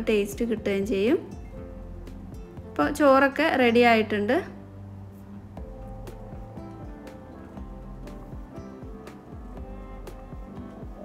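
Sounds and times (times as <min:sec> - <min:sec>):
soft background music: 0:00.0 - 0:11.0.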